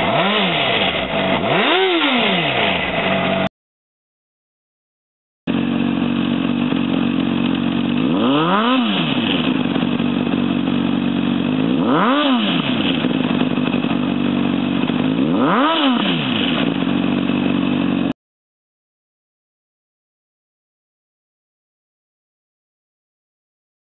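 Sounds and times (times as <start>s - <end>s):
motorcycle engine idling and revving: 0.0s - 3.5s, 5.5s - 18.2s.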